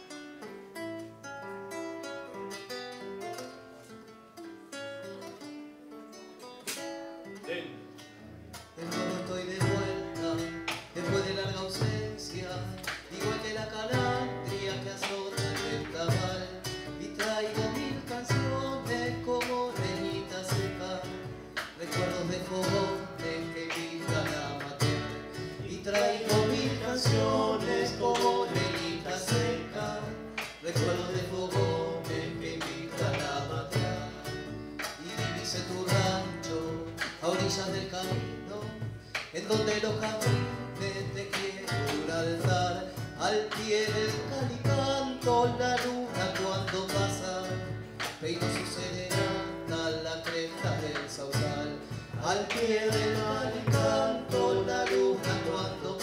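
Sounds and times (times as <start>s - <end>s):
acoustic guitars picking and strumming: 0.0s - 56.0s.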